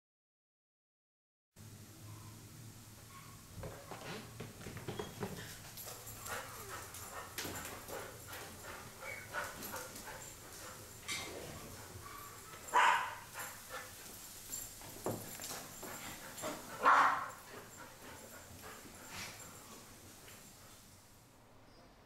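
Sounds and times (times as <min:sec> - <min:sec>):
faint taps and rustles: 0:03.6 - 0:06.4
dog barking: 0:12.0 - 0:13.5, 0:16.8 - 0:17.4.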